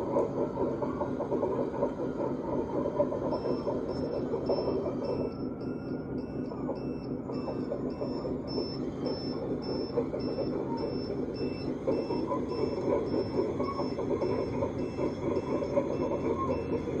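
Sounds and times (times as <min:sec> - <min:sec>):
grinding drive gears and tracks: 0:00.0 - 0:17.0
reversing alarm beeping: 0:00.0 - 0:17.0.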